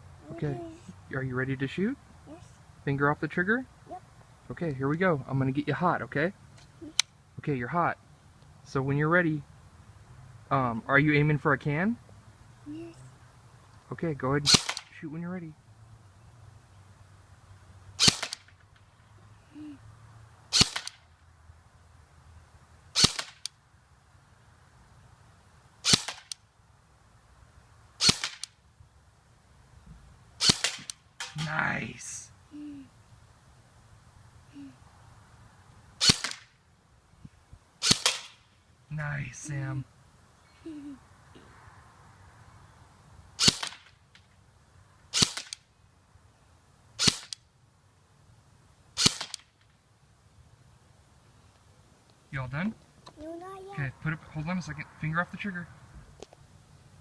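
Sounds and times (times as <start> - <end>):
airsoft gun shots: 14.5 - 14.9, 18.0 - 18.5, 20.5 - 21.0, 23.0 - 23.5, 25.8 - 26.4, 28.0 - 28.5, 30.4 - 31.5, 36.0 - 36.5, 37.8 - 38.4, 43.4 - 43.9, 45.1 - 45.6, 47.0 - 47.4, 49.0 - 49.5.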